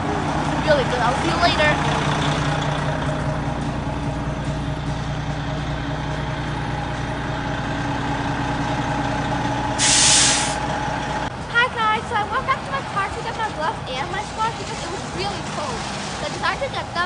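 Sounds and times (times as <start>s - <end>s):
heavy vehicle engine idling: 0.0s - 15.9s.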